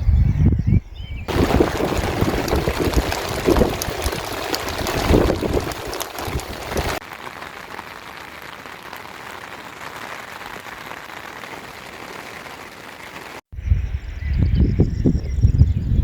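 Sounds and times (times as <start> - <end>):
rumbling wind and water: 1.3 - 13.4
rain pattering: 1.3 - 13.5.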